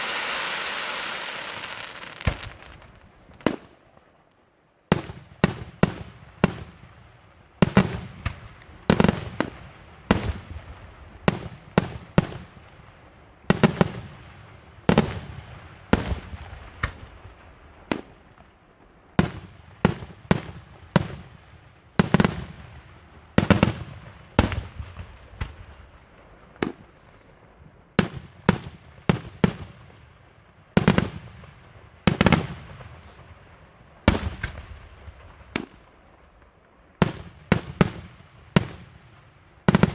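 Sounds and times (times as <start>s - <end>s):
firework bangs with echo: 0.0s - 3.7s, 34.1s - 35.8s, 37.0s - 39.9s.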